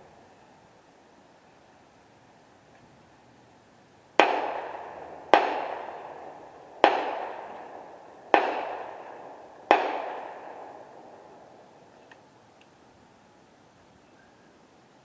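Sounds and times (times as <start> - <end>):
gunshots with reverberating tail: 4.2 - 11.6.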